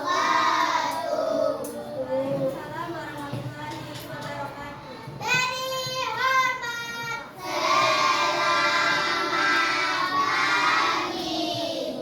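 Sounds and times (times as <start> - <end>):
children singing in unison: 0.0 - 1.8, 7.4 - 12.0.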